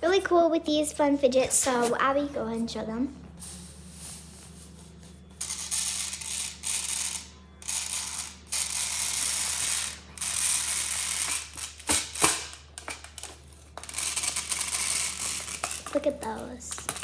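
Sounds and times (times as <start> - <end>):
plastic fidget toy ratcheting clicks: 5.4 - 16.0.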